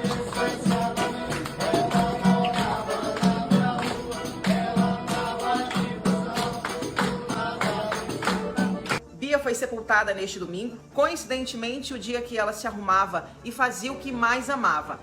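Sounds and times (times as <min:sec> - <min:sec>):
live dance music with percussion: 0:00.0 - 0:09.0.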